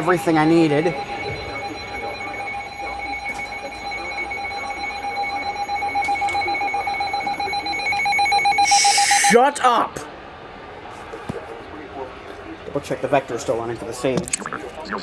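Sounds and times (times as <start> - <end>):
electronic alarm beeping: 0.0 - 9.4.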